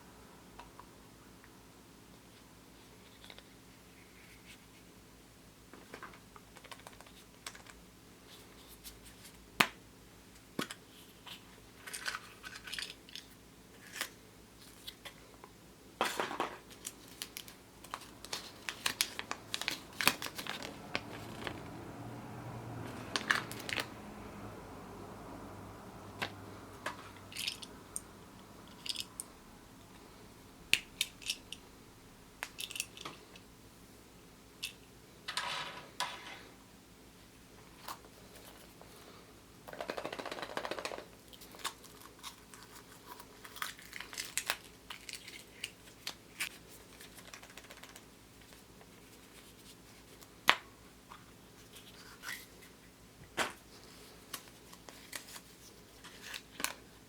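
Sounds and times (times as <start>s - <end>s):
wrapper rustling: 16.7s - 21.6s
hands tapping plastic toy parts: 39.7s - 41.2s.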